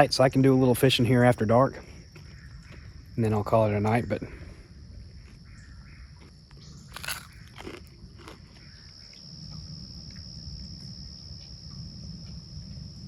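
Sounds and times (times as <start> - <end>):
crunching clicks: 6.2 - 9.3.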